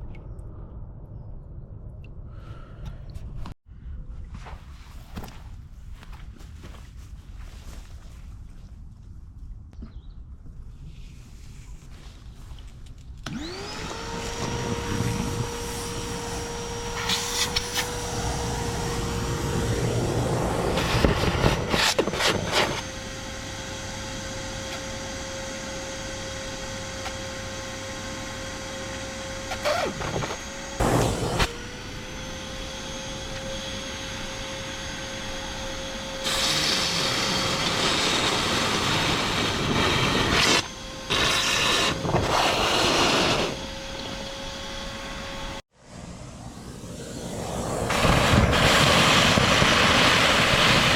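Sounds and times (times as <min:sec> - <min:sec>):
small electric motor running: 0:13.3 - 0:45.6
loud bursts of noise: 0:46.3 - 0:50.9.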